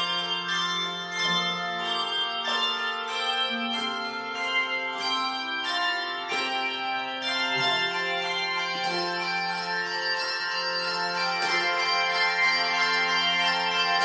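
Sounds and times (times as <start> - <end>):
handbell choir playing: 0.0 - 14.0.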